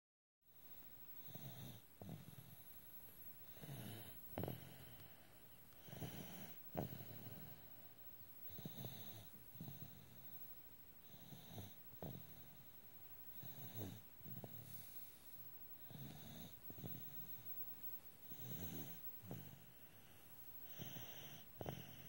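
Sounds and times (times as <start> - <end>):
snoring with snorts: 1.2 - 2.6, 3.4 - 5.0, 5.8 - 7.6, 8.5 - 10.2, 11.0 - 12.6, 13.3 - 15.1, 15.8 - 17.4, 18.2 - 22.0.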